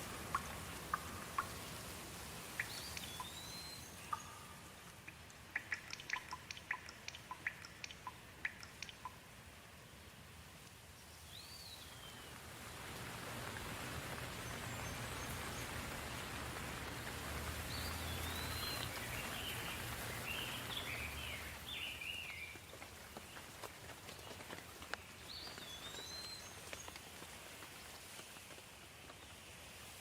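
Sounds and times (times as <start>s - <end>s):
light rain falling: 0.0s - 30.0s
bird chirping: 2.6s - 9.2s, 17.7s - 22.7s.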